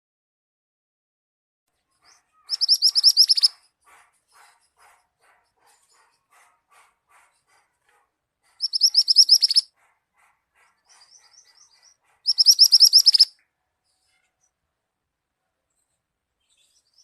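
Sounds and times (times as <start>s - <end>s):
faint bird chips: 1.9s - 4.9s, 8.6s - 9.6s, 10.6s - 13.3s
songbird trilling: 2.1s - 3.6s, 8.6s - 9.7s, 11.0s - 13.3s.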